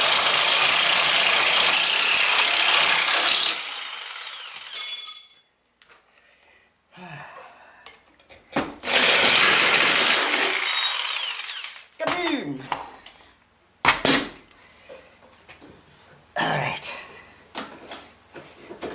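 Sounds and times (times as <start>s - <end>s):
power tool motor whining: 0.0s - 4.8s, 8.8s - 11.8s.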